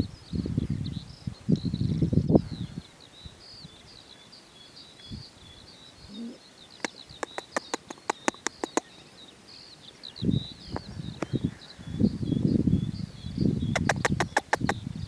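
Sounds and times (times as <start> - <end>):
small birds twittering: 0.0 - 15.0
sharp clicks: 6.8 - 8.9, 13.8 - 14.8.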